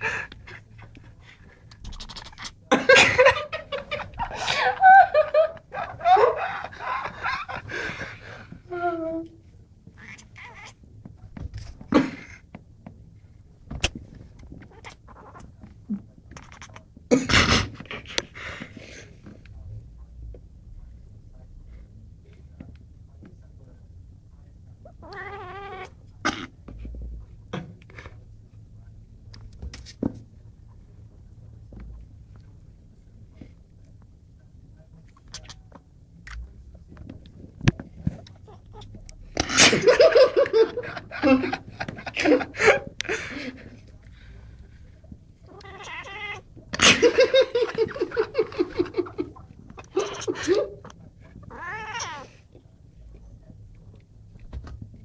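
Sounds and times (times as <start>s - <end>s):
cat making breathy noises: 0.0s - 2.6s.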